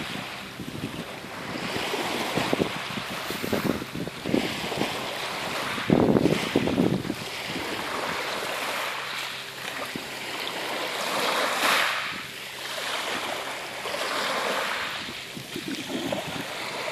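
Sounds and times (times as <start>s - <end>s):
sea waves splashing: 0.0s - 16.9s.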